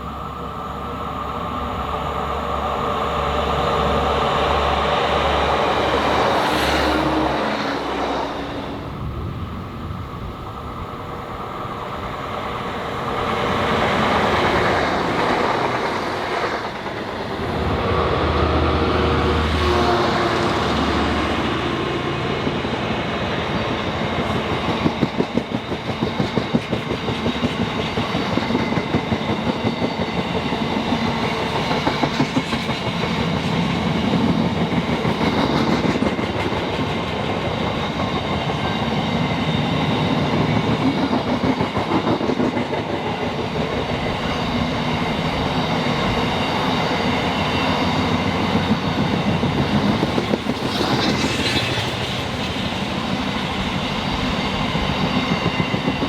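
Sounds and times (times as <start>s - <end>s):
train wheels clattering over rails: 23.4s - 56.0s.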